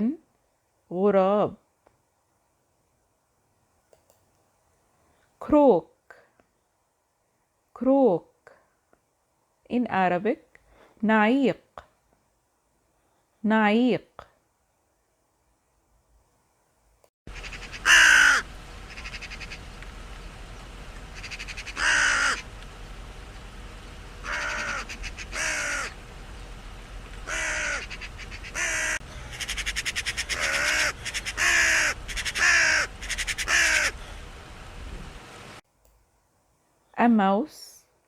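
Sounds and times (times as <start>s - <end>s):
faint background hum: 0.0s - 38.0s
raven croaking: 17.3s - 19.7s, 21.1s - 22.5s, 24.2s - 26.1s, 27.2s - 34.3s.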